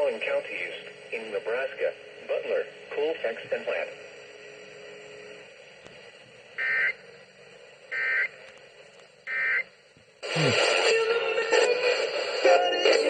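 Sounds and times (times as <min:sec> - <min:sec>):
music: 0:10.7 - 0:13.0.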